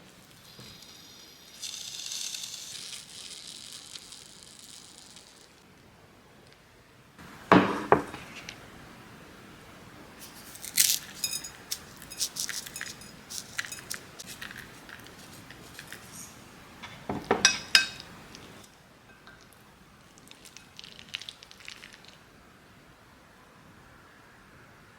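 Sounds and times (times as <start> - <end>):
dishes and utensils clattering: 10.2 - 19.4.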